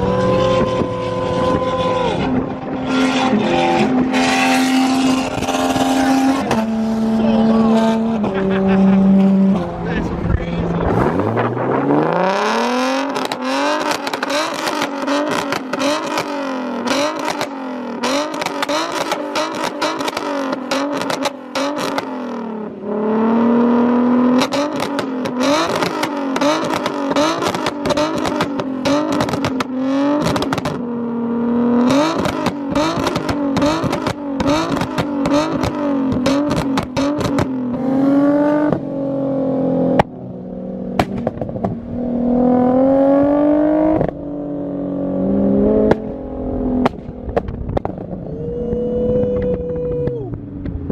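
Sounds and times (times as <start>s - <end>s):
supercar engine revving: 0.0s - 50.9s
exhaust pops and crackles: 13.0s - 17.6s, 18.2s - 22.1s, 24.4s - 30.9s, 31.8s - 37.8s, 40.0s - 40.2s, 40.9s - 41.8s, 45.8s - 50.9s.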